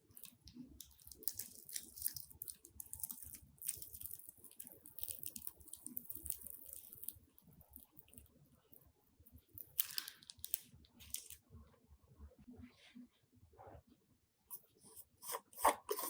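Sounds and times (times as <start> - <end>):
crunchy slime crackling: 0.0 - 11.4.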